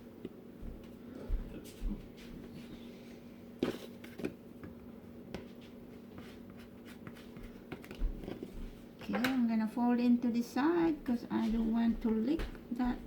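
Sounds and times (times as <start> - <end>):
steady low hum: 0.0 - 13.0
dough being folded by hand: 5.3 - 8.8.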